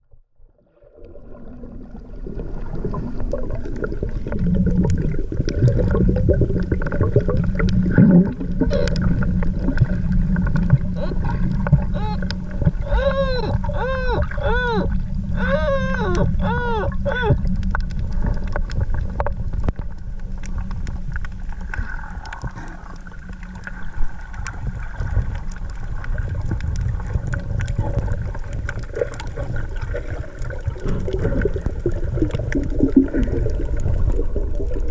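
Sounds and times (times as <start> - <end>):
low rumble of water: 0.0 - 34.9
underwater calls rising and falling: 1.1 - 19.2, 21.4 - 34.9
faint clicks: 17.1 - 24.6.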